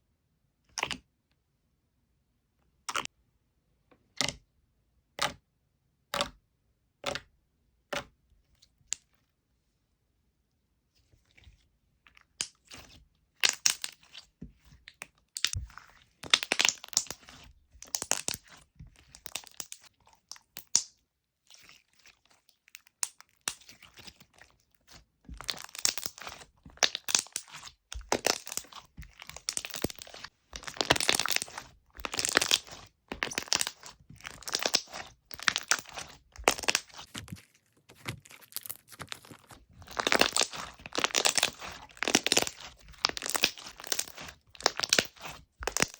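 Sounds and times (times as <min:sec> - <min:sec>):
slime being squeezed crackling: 0:12.2 - 0:20.9, 0:21.5 - 0:45.9.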